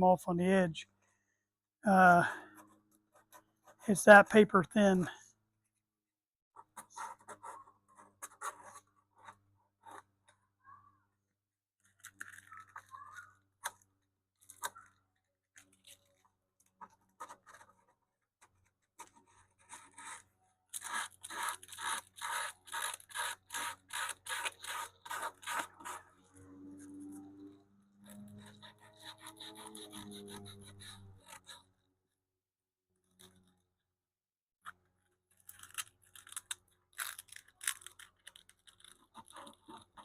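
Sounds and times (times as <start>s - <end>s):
sandpaper rubbing on wood: 20.8s - 26.0s.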